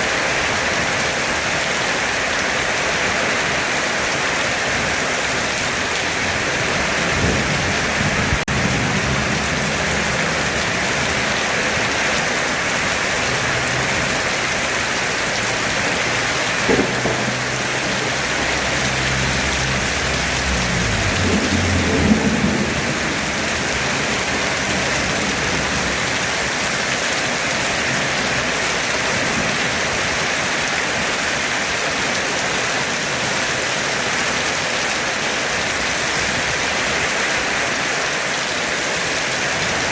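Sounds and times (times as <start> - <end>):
heavy rain pouring: 0.0 - 39.9
thunder rumbling: 5.8 - 27.0.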